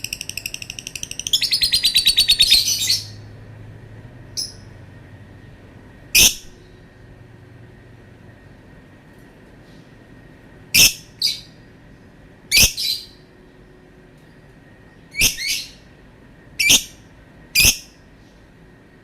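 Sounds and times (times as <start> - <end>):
bird high-pitched calls: 0.0 - 3.3, 6.2 - 6.8, 10.8 - 11.6, 12.5 - 13.2, 15.1 - 15.8, 16.6 - 17.0, 17.6 - 18.0.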